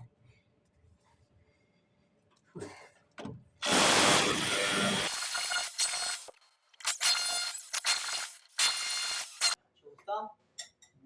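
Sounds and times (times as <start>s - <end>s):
power tool cutting into wall: 3.6s - 9.6s.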